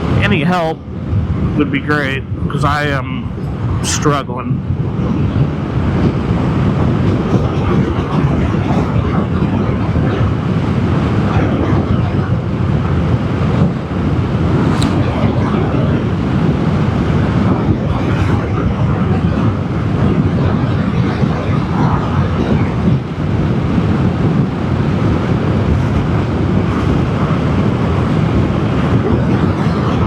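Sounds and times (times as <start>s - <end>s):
wind rush: 0.0s - 30.0s
road noise: 12.4s - 18.0s.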